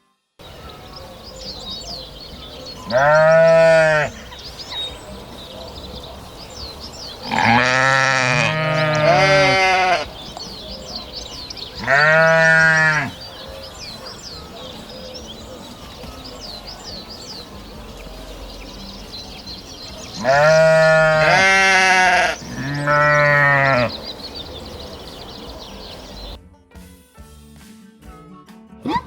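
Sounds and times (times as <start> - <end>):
sheep bleating: 2.8 - 4.2, 7.2 - 10.1, 11.8 - 13.2, 20.2 - 24.0.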